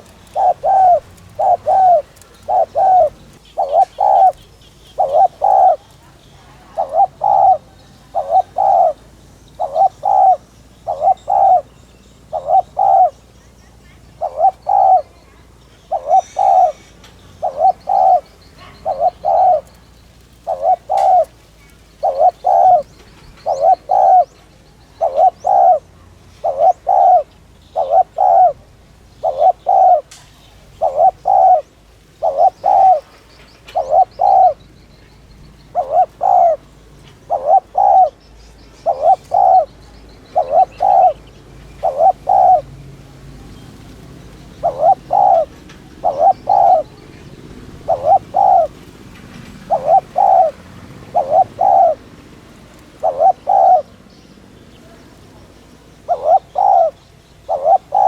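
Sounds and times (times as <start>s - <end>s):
dove cooing: 0.0s - 54.2s, 54.8s - 58.0s
faint small-bird chirps: 0.3s - 25.7s.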